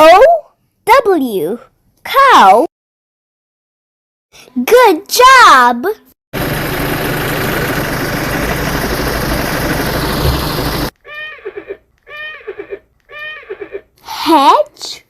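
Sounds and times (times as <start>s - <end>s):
loud rushing noise with hum: 6.4s - 10.9s
toy horse whinny: 11.0s - 14.0s.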